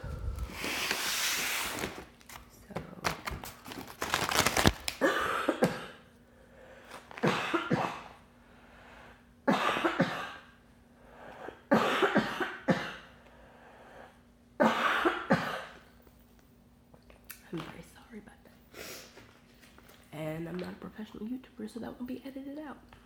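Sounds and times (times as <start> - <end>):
woman coughing: 5.0 - 6.1, 7.2 - 8.2, 9.5 - 10.5, 11.7 - 13.1, 14.6 - 15.8.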